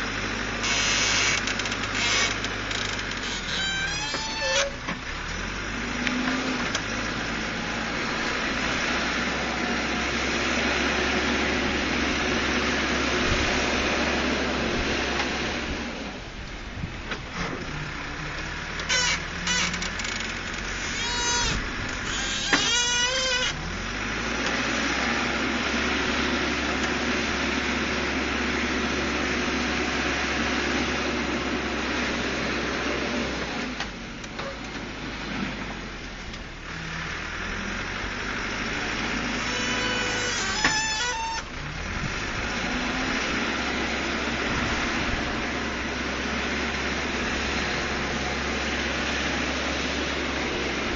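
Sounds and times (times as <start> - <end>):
backhoe diesel engine running: 0.0 - 50.9
short high-pitched squeals: 0.6 - 4.9, 18.8 - 23.6, 39.3 - 41.6.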